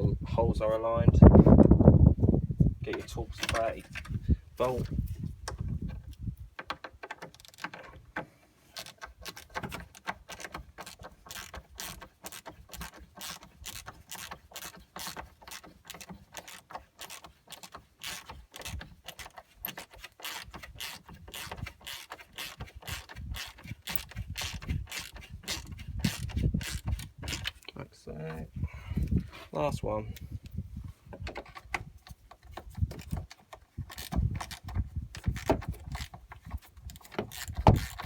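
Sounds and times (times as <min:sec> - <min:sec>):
hand tool clicking on screw: 0:08.7 - 0:27.7, 0:31.2 - 0:38.0.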